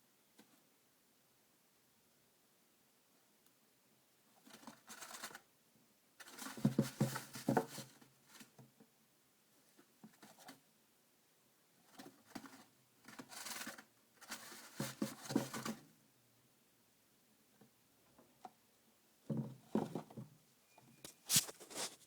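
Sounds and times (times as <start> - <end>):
chinchilla rustling in dust: 21.0 - 22.0.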